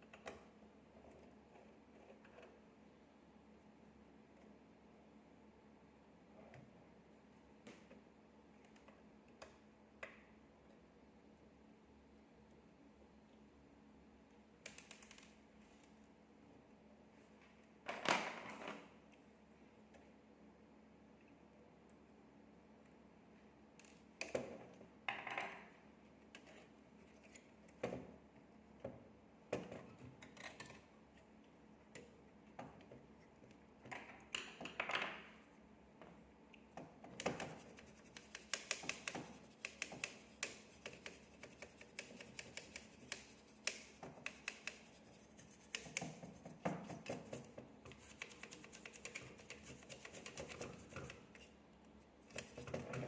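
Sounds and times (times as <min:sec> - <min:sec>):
small tools clicking and scratching: 0:37.2 - 0:51.6, 0:52.2 - 0:53.0.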